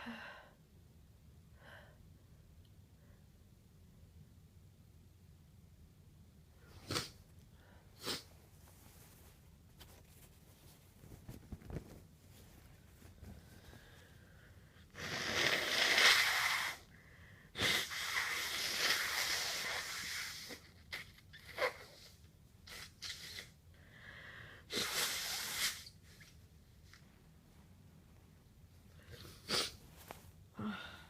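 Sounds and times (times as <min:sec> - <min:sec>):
person blowing nose: 0:06.7 - 0:07.2, 0:08.0 - 0:08.4, 0:14.8 - 0:16.9, 0:17.6 - 0:23.6, 0:24.6 - 0:26.4, 0:29.1 - 0:30.2.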